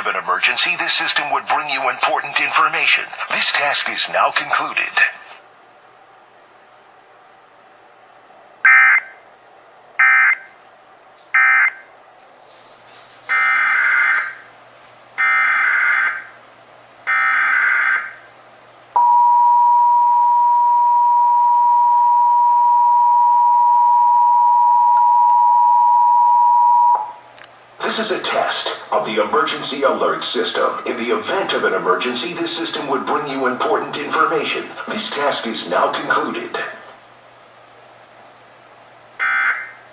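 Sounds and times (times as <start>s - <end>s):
two-tone attention signal: 19.0s - 27.2s.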